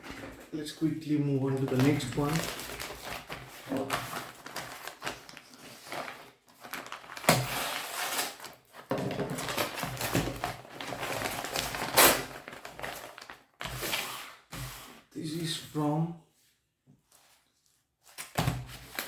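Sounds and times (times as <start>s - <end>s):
packaging rustling and crinkling: 0.0s - 0.6s, 1.4s - 14.8s, 18.0s - 19.0s.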